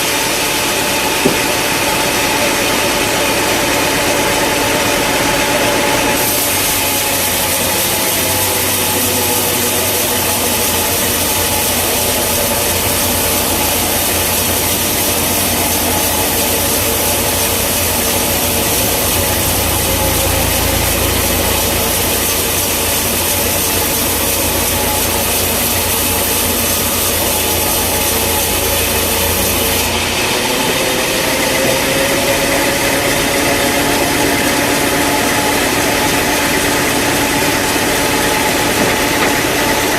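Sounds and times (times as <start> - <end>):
sawmill engine: 0.0 - 39.9
saw blade hissing through wood: 6.2 - 31.4.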